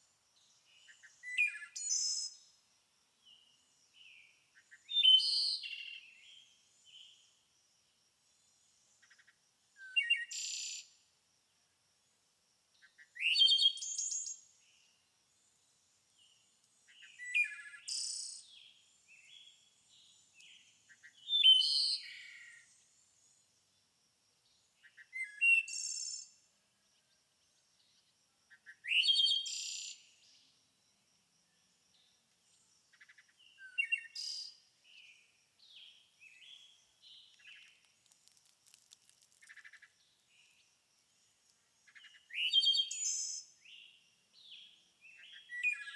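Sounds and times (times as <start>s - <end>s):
songbird chirping and whistling: 0.8s - 2.4s, 4.8s - 5.9s, 13.2s - 14.4s, 16.9s - 18.7s, 20.4s - 22.4s, 24.9s - 26.3s, 28.8s - 30.0s, 33.6s - 34.4s, 41.9s - 43.9s, 45.1s - 45.9s.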